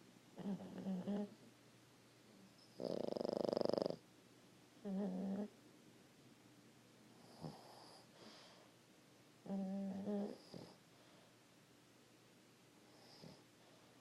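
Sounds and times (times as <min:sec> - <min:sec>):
dog snoring: 0:00.4 - 0:01.3, 0:02.7 - 0:04.0, 0:04.8 - 0:05.5, 0:07.2 - 0:08.4, 0:09.4 - 0:10.8, 0:12.9 - 0:13.5
wheezy breaths: 0:07.4 - 0:08.8.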